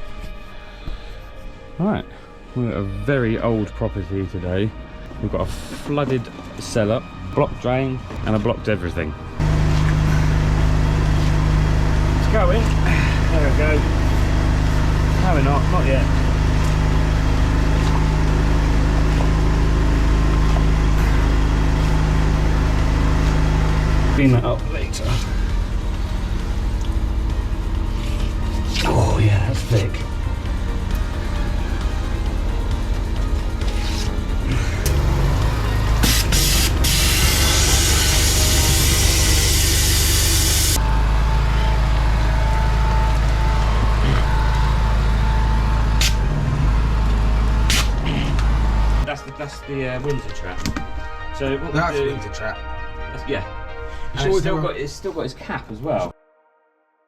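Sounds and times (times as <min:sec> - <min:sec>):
machine engine running steadily: 0:07.0 - 0:49.1
high-pressure water jet hissing: 0:34.8 - 0:40.8.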